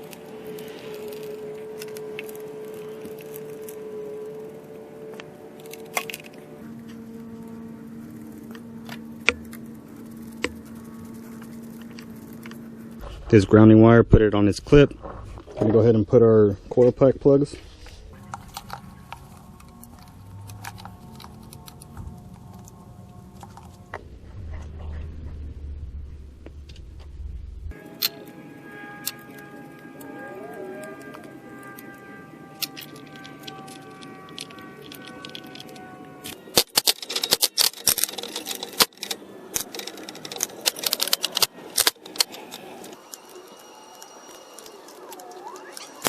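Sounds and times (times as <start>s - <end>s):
tools and plastic parts clicking: 0.0s - 7.0s, 18.2s - 24.0s, 29.0s - 46.0s
faint background music: 27.7s - 46.0s.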